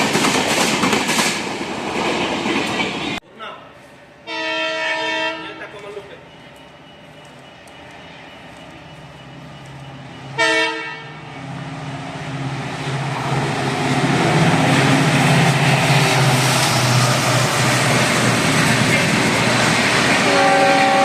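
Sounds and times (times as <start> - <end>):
diesel locomotive engine: 0.0 - 21.0
locomotive horn blast: 4.2 - 5.7, 10.4 - 11.2, 20.2 - 21.0.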